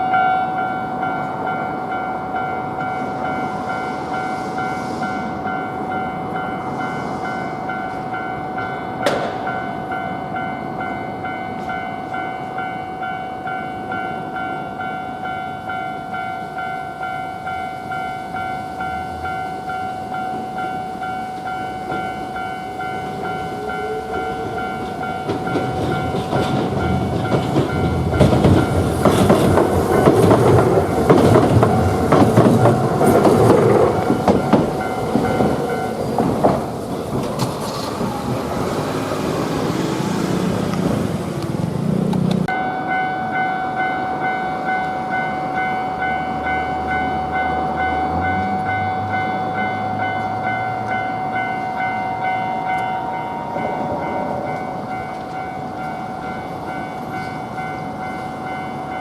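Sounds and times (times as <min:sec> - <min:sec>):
tram wheels clacking on rails: 0:00.0 - 0:59.0
level crossing bell ringing: 0:07.6 - 0:28.8, 0:42.5 - 0:59.0.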